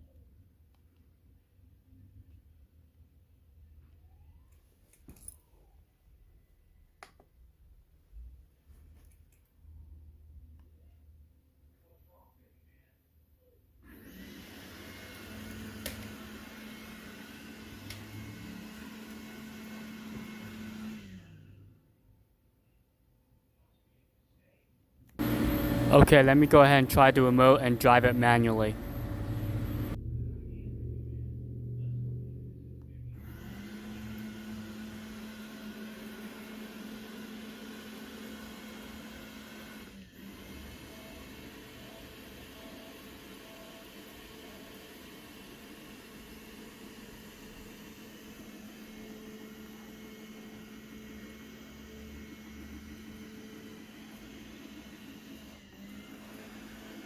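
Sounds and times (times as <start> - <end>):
robot vacuum motor hum: 13.9 - 21.7, 25.2 - 30.0, 33.2 - 57.0.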